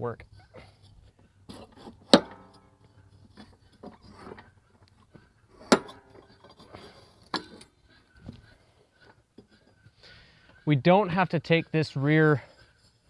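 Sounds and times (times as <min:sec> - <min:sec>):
handling noise: 0:00.7 - 0:09.9.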